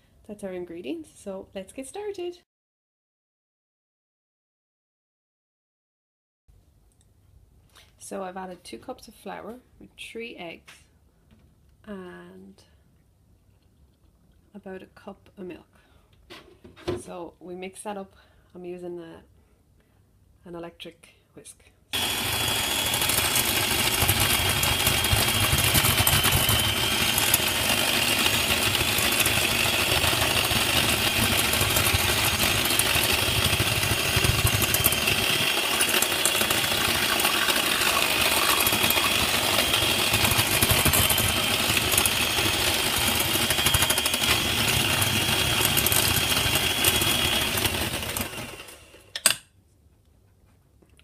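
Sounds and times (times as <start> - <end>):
electric whisk motor whine: 22.0 - 49.1.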